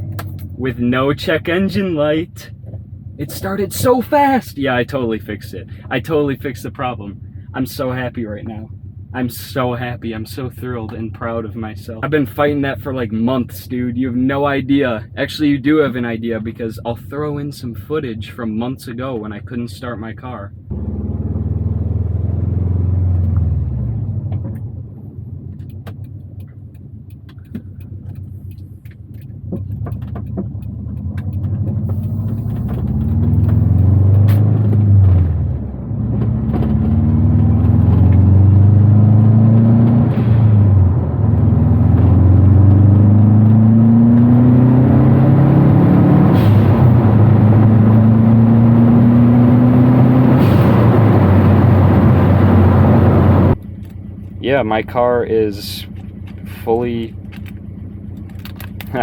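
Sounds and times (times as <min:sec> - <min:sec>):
car engine accelerating through gears: 0:20.7 - 0:53.6.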